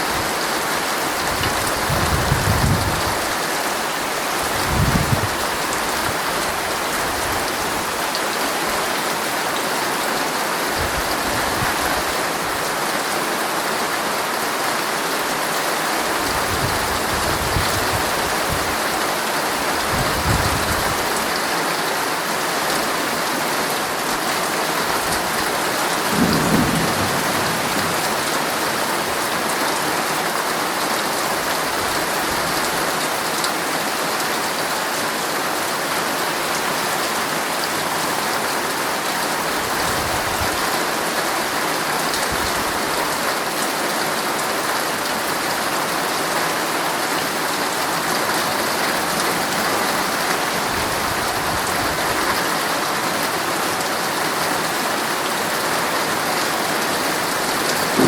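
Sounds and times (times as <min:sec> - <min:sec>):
heavy rain on tent fabric: 0:00.0 - 0:58.0.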